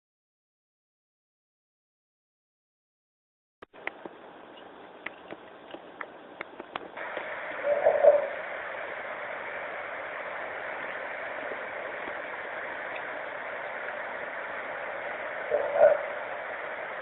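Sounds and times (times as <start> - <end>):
running water rushing: 7.0 - 17.0.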